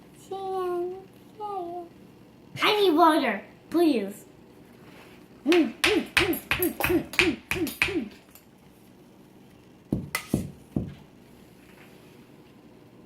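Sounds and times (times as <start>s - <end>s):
person hooting rhythmically: 5.4s - 8.2s
hammer striking block: 5.5s - 8.1s.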